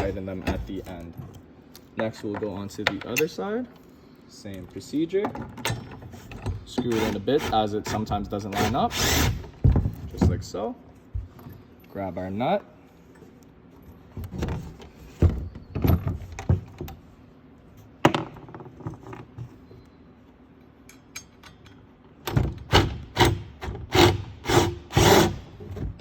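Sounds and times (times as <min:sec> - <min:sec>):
hand tool rasping strokes: 0:23.9 - 0:25.4.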